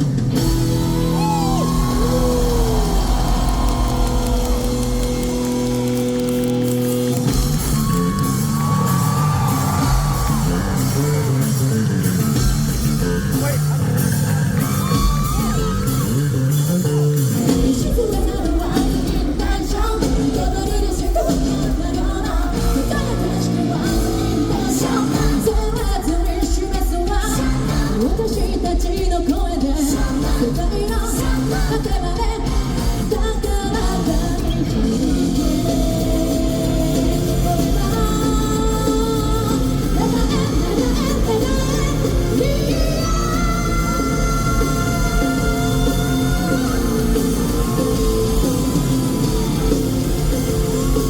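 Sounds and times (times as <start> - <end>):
live rock band playing: 0.0 - 51.0
audience shouting: 0.4 - 16.3
singing: 17.2 - 51.0.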